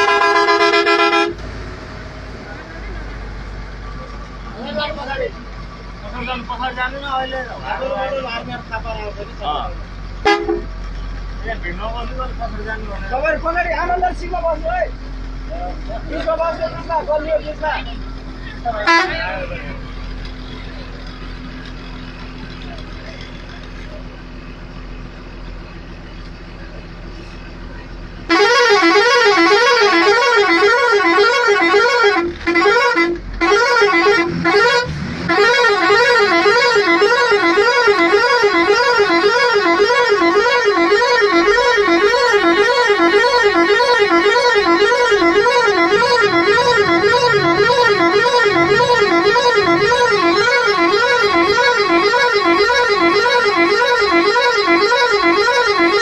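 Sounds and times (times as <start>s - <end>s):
vehicle engine idling: 0.0s - 56.0s
warbling air horn: 28.3s - 56.0s.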